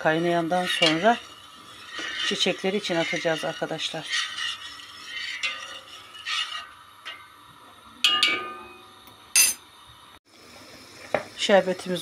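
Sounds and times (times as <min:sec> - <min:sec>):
kitchenware clinking: 0:08.0 - 0:09.7.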